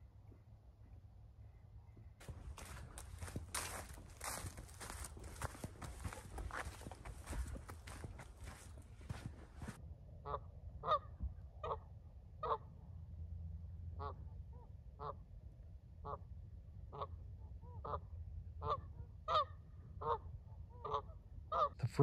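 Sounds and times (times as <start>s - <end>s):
geese honking: 2.2s - 11.0s.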